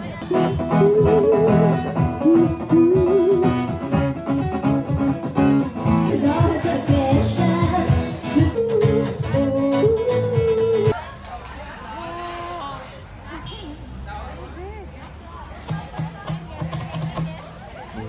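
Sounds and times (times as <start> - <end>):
guitar: 0.0 - 11.0
person singing: 0.2 - 4.8, 5.9 - 11.0.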